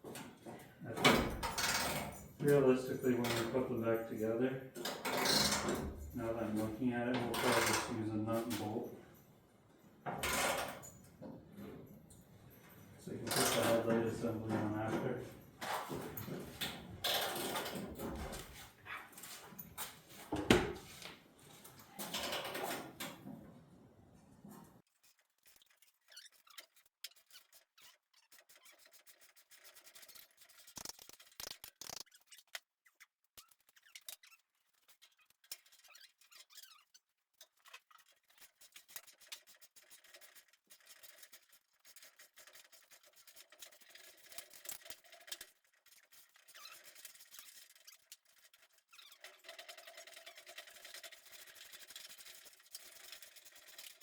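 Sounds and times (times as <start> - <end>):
scratchy rubbing: 24.8 - 54.0.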